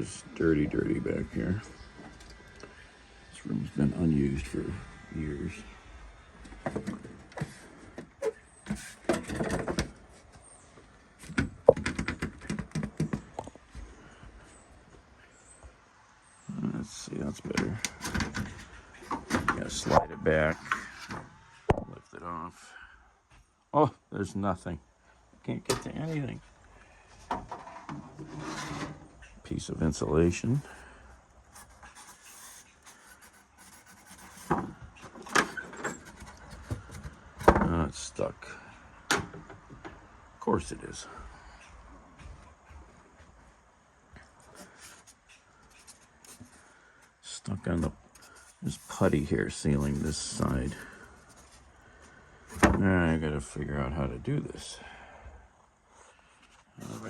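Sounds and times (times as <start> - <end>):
panels knocking and scraping: 6.6 - 10.0, 17.4 - 21.9, 31.6 - 37.7, 47.7 - 51.6, 52.5 - 52.9
air conditioner housing clattering: 17.5 - 21.3, 25.7 - 26.2.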